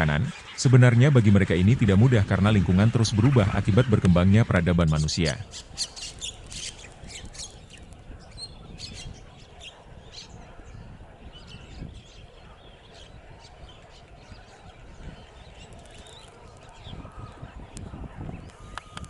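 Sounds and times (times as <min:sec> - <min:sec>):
birds chirping: 0:00.0 - 0:19.0.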